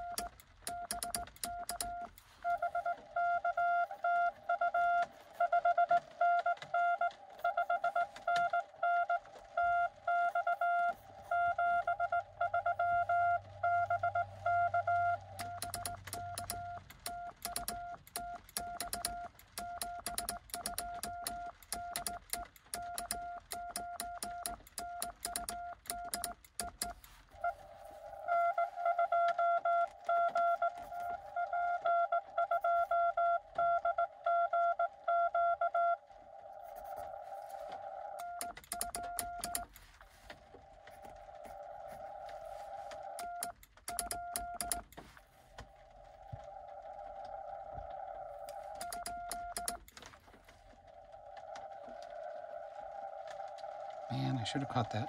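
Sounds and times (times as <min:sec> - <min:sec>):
sharp clicks: 0:00.0 - 0:02.2, 0:15.4 - 0:27.2, 0:38.2 - 0:39.9, 0:43.0 - 0:45.0, 0:48.4 - 0:50.2
morse code tones: 0:00.0 - 0:36.0, 0:38.1 - 0:39.8, 0:41.4 - 0:45.0, 0:48.4 - 0:49.9.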